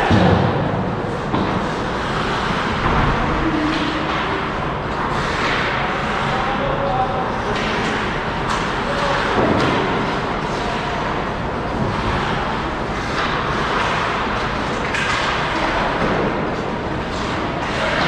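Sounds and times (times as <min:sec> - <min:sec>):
hockey sticks clacking: 0:01.2 - 0:18.0
skates scraping ice: 0:01.5 - 0:02.9, 0:11.7 - 0:18.0.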